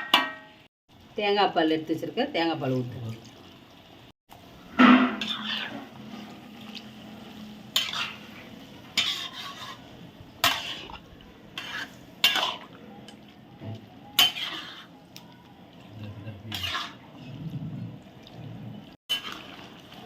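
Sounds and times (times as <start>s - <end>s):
metal ladle scraping a pot: 4.7s - 6.8s, 7.6s - 12.8s, 14.2s - 15.0s, 16.4s - 17.4s, 19.1s - 19.6s.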